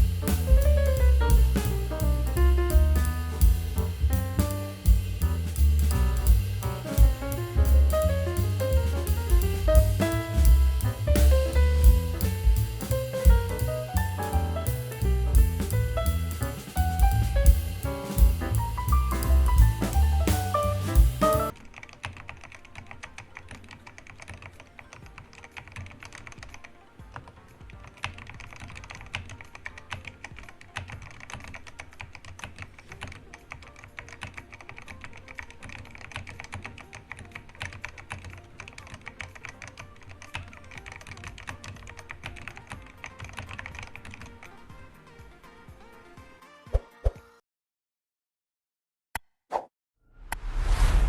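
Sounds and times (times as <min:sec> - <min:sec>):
fast typing on mechanical keyboard: 0:27.9 - 0:44.4.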